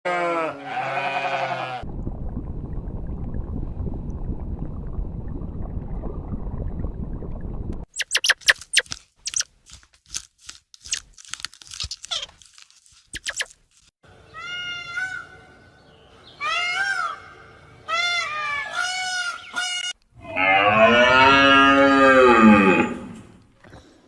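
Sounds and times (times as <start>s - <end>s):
sheep bleating: 0.1s - 1.8s
low rumbling noise: 1.8s - 7.9s.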